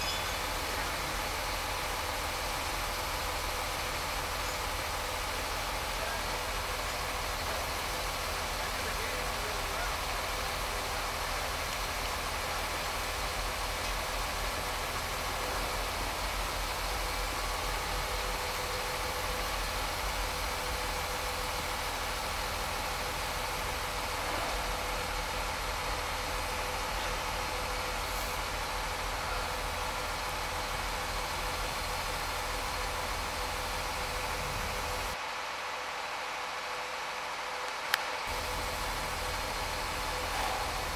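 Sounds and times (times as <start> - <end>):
heavy machinery engine idling: 0.0 - 40.9.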